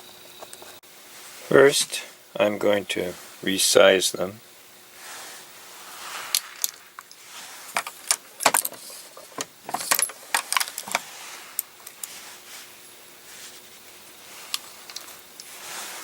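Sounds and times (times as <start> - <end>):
brass cases clinking: 6.6 - 11.0.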